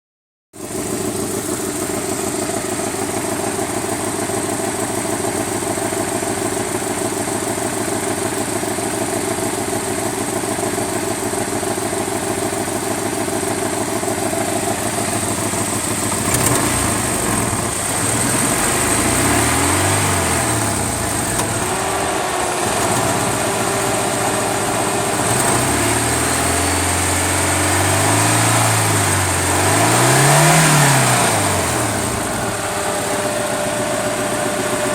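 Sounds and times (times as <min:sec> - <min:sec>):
engine idling and revving: 0:00.6 - 0:34.9.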